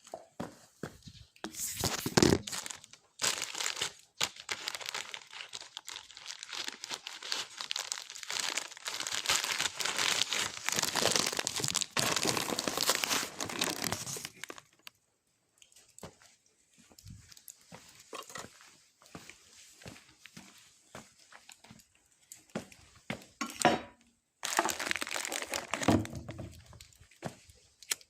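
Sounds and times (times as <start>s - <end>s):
paper being crumpled: 1.4s - 14.9s, 24.4s - 27.1s.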